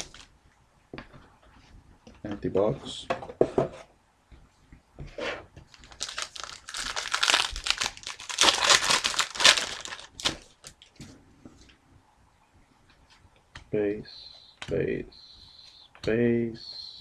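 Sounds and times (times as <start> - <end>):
foil wrapper crinkling and tearing: 0.0 - 0.3, 5.7 - 11.0.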